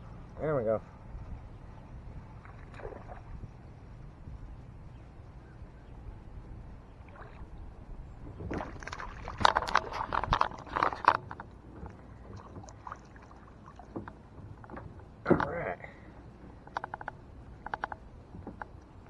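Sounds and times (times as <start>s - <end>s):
low steady rumble: 0.0s - 19.0s
sharp irregular clicks and knocks: 8.5s - 12.8s, 13.9s - 19.0s.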